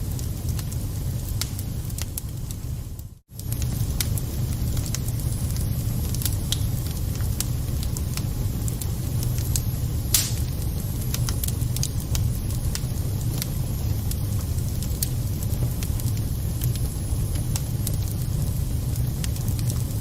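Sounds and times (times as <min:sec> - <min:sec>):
wood fire crackling: 0:00.0 - 0:20.0
fire pop: 0:10.0 - 0:11.4.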